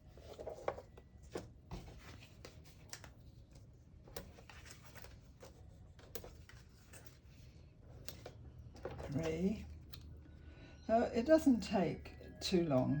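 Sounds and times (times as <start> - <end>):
paper rustling: 0.0 - 9.6.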